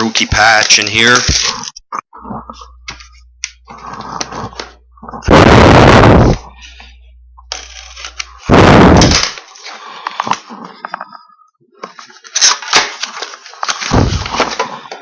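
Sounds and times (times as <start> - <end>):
loud rush of noise: 5.3 - 6.4.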